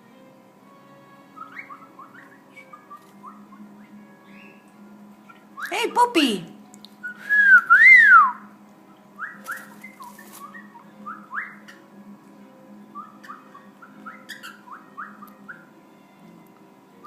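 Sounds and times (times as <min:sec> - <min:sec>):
cockatiel chirping: 0:01.4 - 0:04.6, 0:13.0 - 0:15.6.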